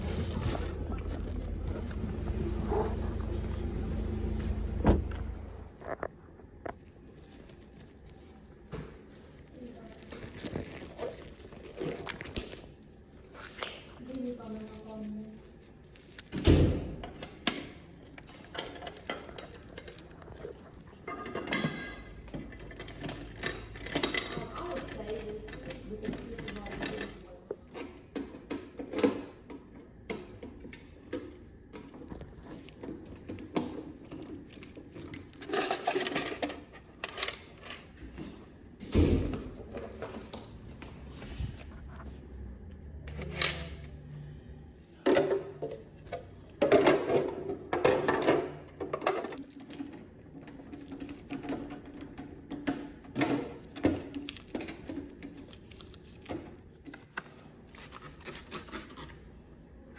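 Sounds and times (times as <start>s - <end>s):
low hum: 0.0s - 6.5s.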